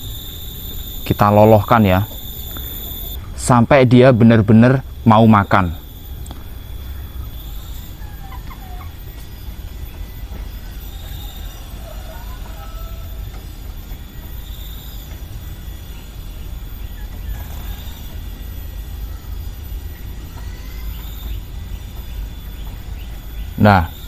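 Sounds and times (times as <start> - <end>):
steady low rumble: 0.0 - 24.0
chicken calling: 4.9 - 24.0.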